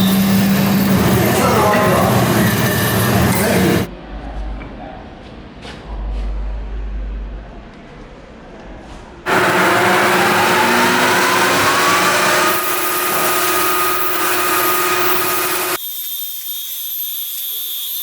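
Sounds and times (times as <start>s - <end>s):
machine hum: 0.0s - 3.9s, 9.3s - 15.8s
power tool motor whine: 0.0s - 3.9s, 9.3s - 18.0s.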